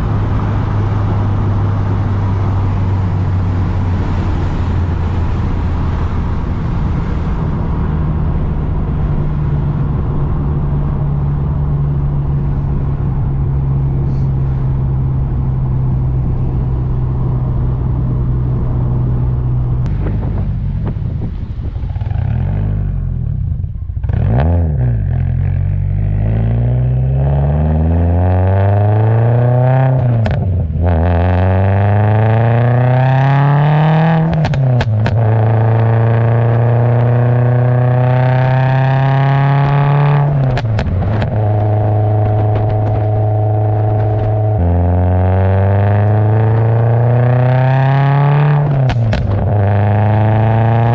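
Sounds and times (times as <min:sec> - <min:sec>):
car exhaust revving: 0:00.0 - 0:50.9
exhaust pops: 0:29.9 - 0:31.4, 0:34.2 - 0:37.3, 0:38.0 - 0:44.9, 0:48.3 - 0:50.9.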